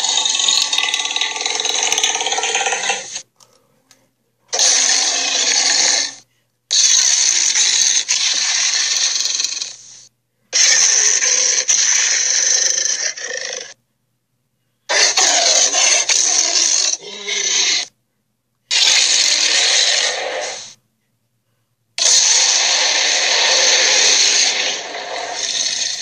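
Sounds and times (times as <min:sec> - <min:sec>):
harsh monster roar: 0:00.0 - 0:03.2, 0:04.5 - 0:09.8, 0:10.6 - 0:13.8, 0:14.9 - 0:17.9, 0:18.7 - 0:20.7, 0:22.0 - 0:26.0.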